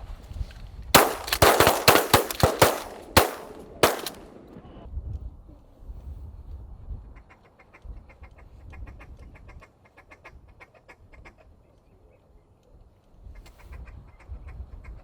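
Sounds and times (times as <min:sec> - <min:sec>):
shotgun shots: 0:01.0 - 0:04.6.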